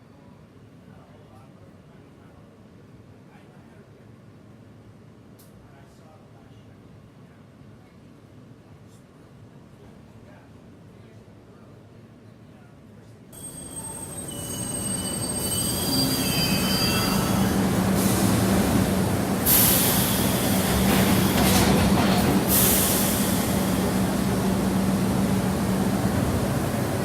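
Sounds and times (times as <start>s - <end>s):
subway train rumble: 0.5s - 27.0s
subway train wheel squeal: 13.4s - 27.0s.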